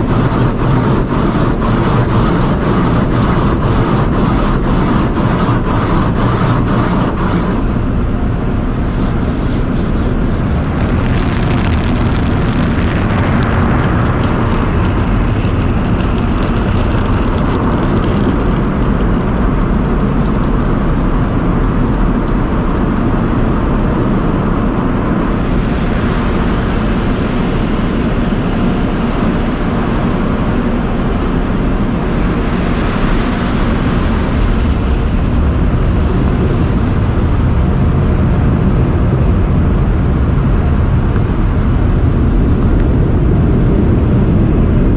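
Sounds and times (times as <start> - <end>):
high hiss: 0.0 - 11.2
car wash equipment roaring: 0.0 - 44.9.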